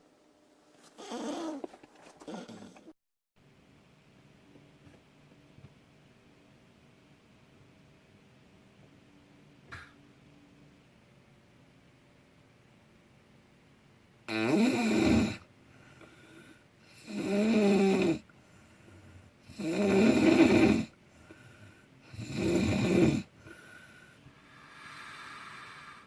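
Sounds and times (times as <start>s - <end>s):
man snoring loudly: 14.3s - 15.4s, 16.9s - 18.3s, 19.5s - 21.0s, 22.0s - 23.6s
quiet breaths: 14.3s - 26.0s.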